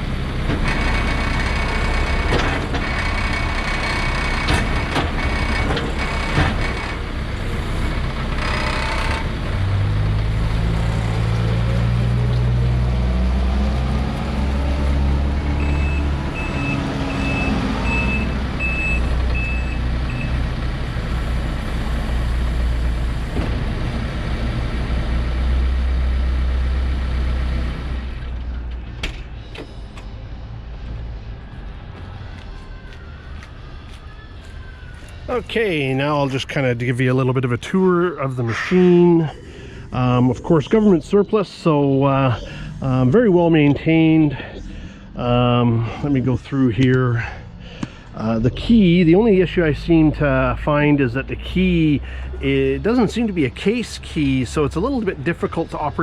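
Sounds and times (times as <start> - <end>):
diesel engine running: 0.0 - 56.0
reverse alarm beeping: 15.6 - 20.4.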